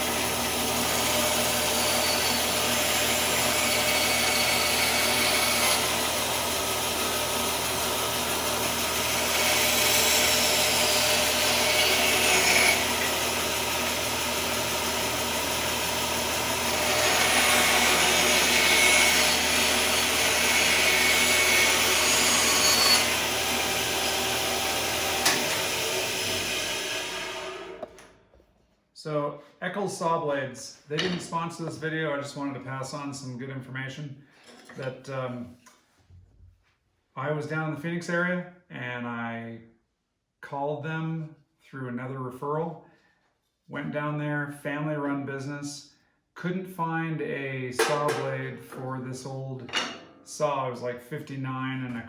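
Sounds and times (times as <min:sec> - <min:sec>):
bandsaw cutting wood: 0:00.0 - 0:28.1.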